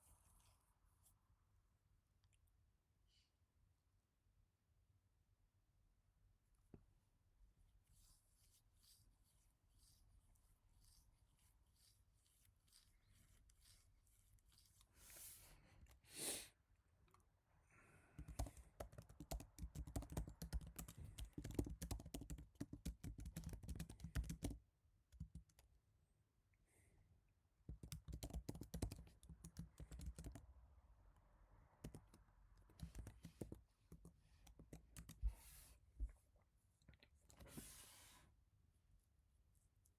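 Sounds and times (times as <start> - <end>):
quiet keyboard typing: 18.2 - 25.7, 27.7 - 30.5, 31.8 - 35.4.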